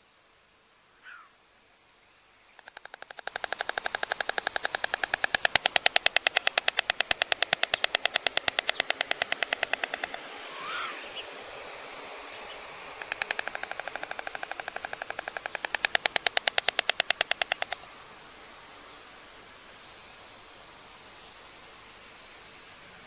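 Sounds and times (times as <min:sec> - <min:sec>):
microphone hiss: 0:00.0 - 0:23.0
storks clattering bills: 0:02.6 - 0:10.5, 0:12.3 - 0:17.8.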